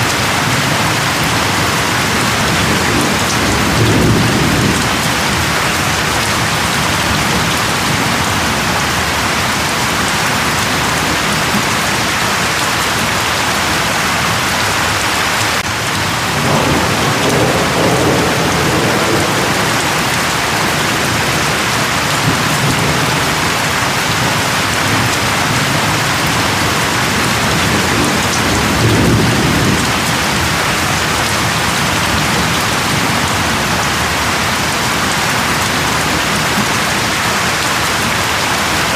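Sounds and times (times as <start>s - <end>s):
heavy rain hissing: 0.0s - 38.9s
distant thunder rumbles: 0.1s - 9.0s, 15.7s - 36.8s.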